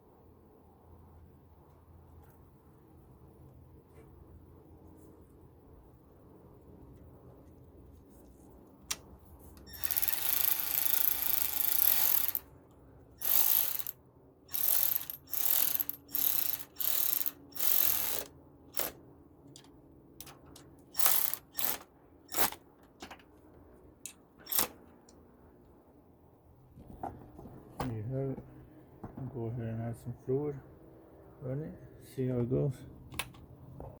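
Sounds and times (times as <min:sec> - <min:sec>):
ratchet wrench clicking: 0:09.6 - 0:12.5, 0:13.2 - 0:19.0, 0:20.2 - 0:22.6.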